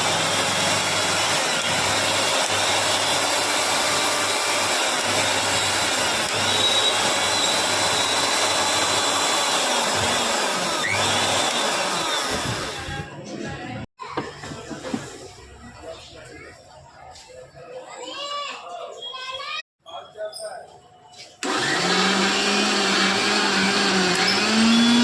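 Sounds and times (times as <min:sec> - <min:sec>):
mixer grinder motor whirring: 0:00.0 - 0:13.1, 0:21.4 - 0:25.0.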